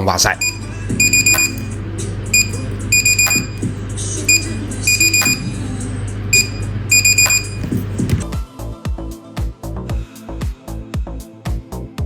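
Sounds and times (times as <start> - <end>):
steady low hum: 0.3 - 8.2
short high electronic beeps: 0.4 - 1.7, 2.4 - 3.7, 4.3 - 5.6, 6.3 - 7.8.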